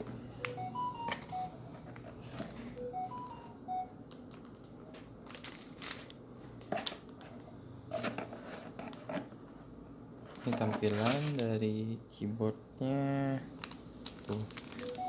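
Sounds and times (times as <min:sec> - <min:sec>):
packaging crinkling and rustling: 0:10.3 - 0:11.5, 0:13.6 - 0:15.0.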